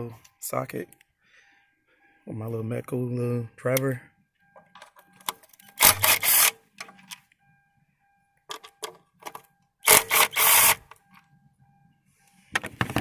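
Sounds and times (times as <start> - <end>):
cordless driver whirring: 5.8 - 6.5, 9.8 - 10.8
tool and parts clicking: 8.5 - 11.0.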